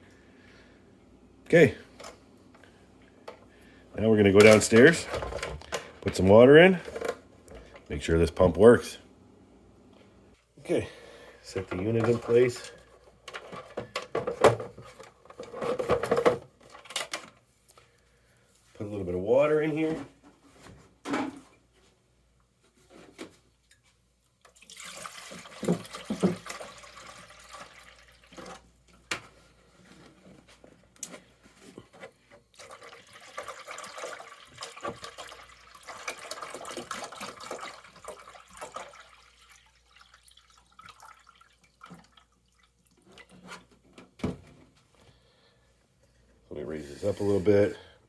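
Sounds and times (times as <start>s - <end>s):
water pouring into plastic bowl: 24.4s - 28.7s, 32.5s - 43.4s.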